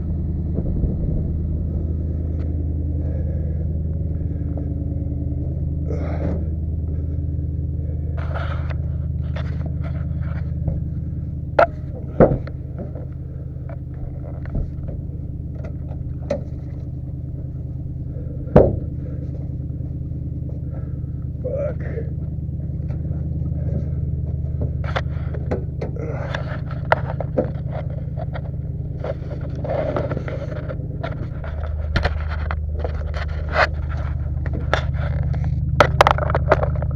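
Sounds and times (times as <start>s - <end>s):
pickup truck engine running: 0.0s - 36.9s
sharp knocks and clanks: 9.4s - 17.0s, 18.4s - 19.6s.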